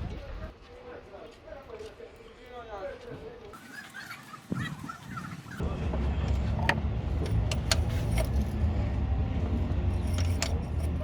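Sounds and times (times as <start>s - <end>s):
vehicle engine running: 5.6s - 11.0s.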